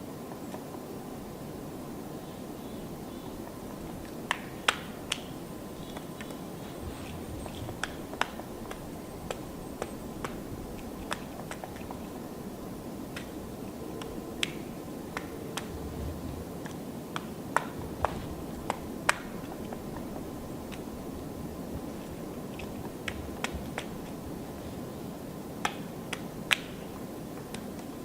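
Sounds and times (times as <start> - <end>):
low background hum: 0.0 - 28.0
woodpecker knocking on bark: 4.0 - 12.2, 16.6 - 20.9, 22.0 - 24.2, 25.6 - 27.8.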